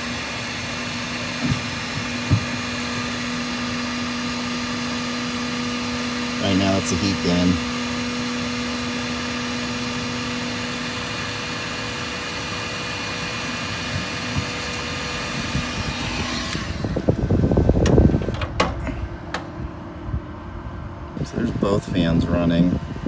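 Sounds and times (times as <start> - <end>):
heat gun whining: 0.0 - 19.7
cooling fans humming: 0.0 - 23.0
loud low rumble with clicks: 14.0 - 23.0.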